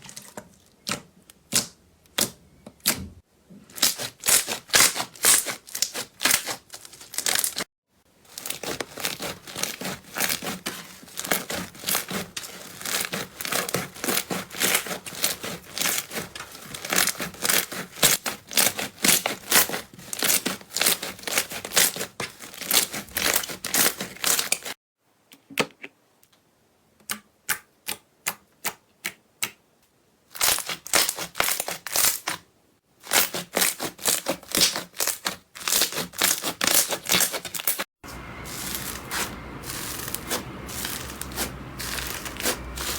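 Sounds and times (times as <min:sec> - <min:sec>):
slime crackling and popping: 0:03.8 - 0:07.6, 0:08.3 - 0:24.7, 0:30.4 - 0:32.4, 0:38.5 - 0:42.9.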